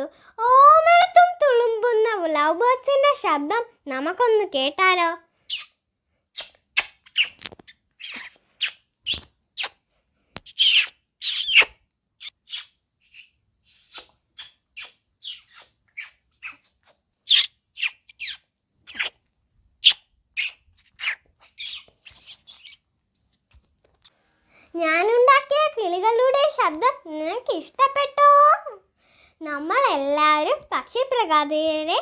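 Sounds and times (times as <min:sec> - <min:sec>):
child imitating bird chirps: 0:05.5 - 0:05.8, 0:08.0 - 0:09.8, 0:10.4 - 0:16.7, 0:17.3 - 0:19.2, 0:19.8 - 0:23.5.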